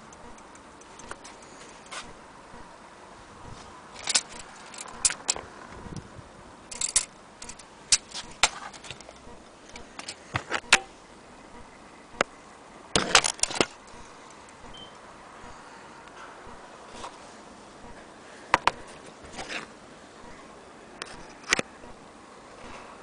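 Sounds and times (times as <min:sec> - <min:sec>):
metallic clicks of clock handled: 0:04.0 - 0:05.4, 0:06.7 - 0:10.8.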